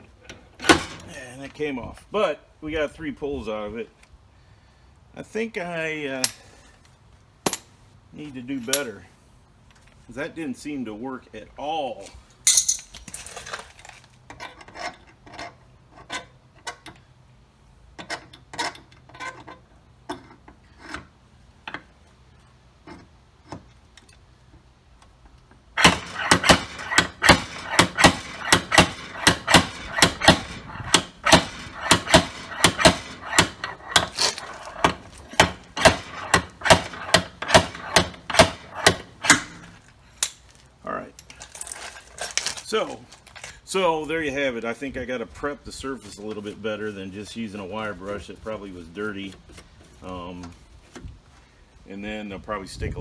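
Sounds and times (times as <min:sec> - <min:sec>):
metal clinks and knocks: 0:00.6 - 0:01.2, 0:07.5 - 0:07.8, 0:12.4 - 0:14.0, 0:25.8 - 0:42.6
metallic strikes and scraping: 0:25.8 - 0:39.7.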